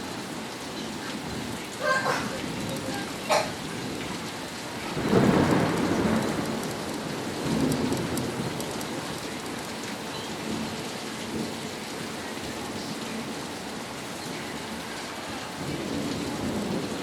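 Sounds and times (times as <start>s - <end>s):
rain falling: 0.0s - 17.0s
thunder rumble: 1.2s - 11.6s, 15.6s - 17.0s.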